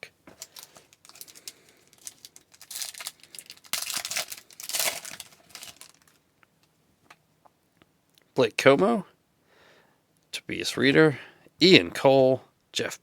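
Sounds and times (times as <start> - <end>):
foil wrapper crinkling and tearing: 0.0 - 6.2.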